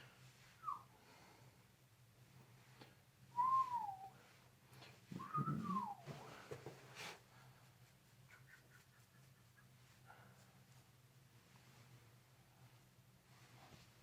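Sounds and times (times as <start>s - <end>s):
whistled notes sliding down: 5.2s - 6.1s.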